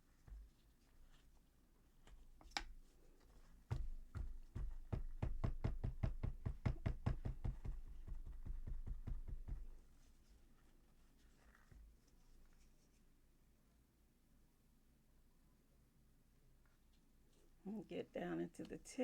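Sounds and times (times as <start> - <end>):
plaster mold tapping on table: 3.7 - 9.8.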